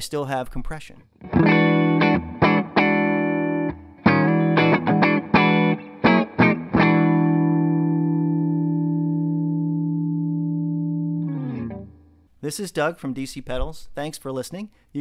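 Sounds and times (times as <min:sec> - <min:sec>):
electric guitar chord stabs: 0:01.2 - 0:12.2.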